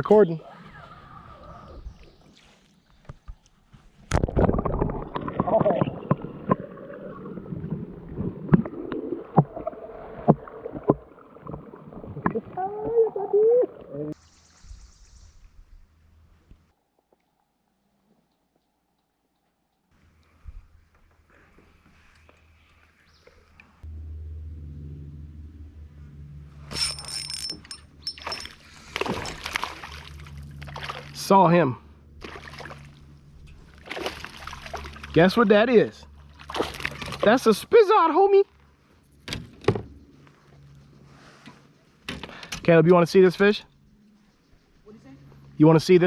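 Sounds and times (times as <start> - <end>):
low wash of water: 4.2 - 14.2, 31.8 - 35.2
low steady rumble: 23.4 - 37.7.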